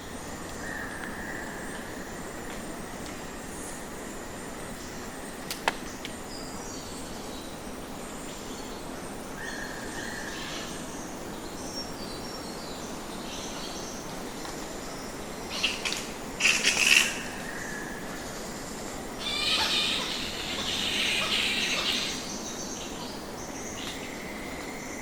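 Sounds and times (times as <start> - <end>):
background hiss: 0.0 - 25.0
bats squeaking: 19.2 - 22.3.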